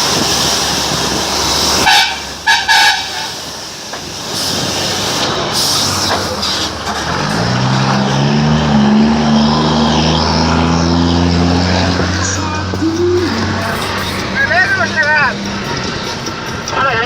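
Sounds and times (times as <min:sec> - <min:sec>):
road and wind noise: 0:00.0 - 0:17.0
truck engine exhaust drone: 0:00.0 - 0:17.0.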